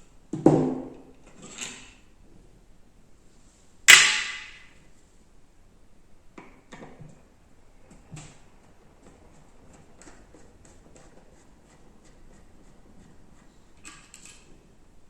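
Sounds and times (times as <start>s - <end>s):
sharp metal clack: 3.9s - 4.7s.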